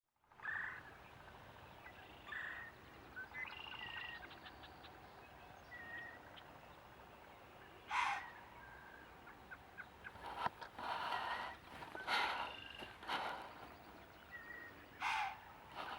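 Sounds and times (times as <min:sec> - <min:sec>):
high bird calls: 0:07.9 - 0:15.9
deer snorting: 0:10.2 - 0:13.7.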